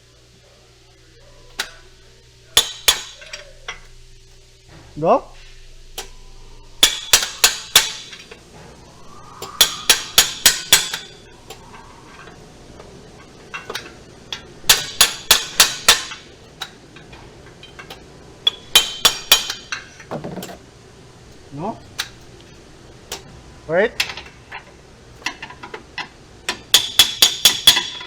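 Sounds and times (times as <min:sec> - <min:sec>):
metal tool tapping on metal: 0:06.8 - 0:08.2, 0:13.2 - 0:20.6, 0:24.0 - 0:28.0.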